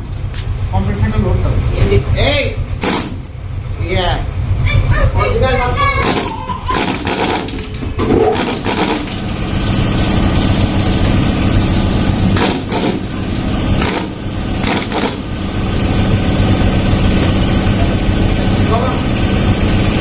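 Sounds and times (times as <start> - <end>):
motorcycle engine idling: 0.0 - 20.0
sharp knocks: 2.8 - 3.3, 6.0 - 9.2, 12.4 - 13.2, 13.8 - 15.2.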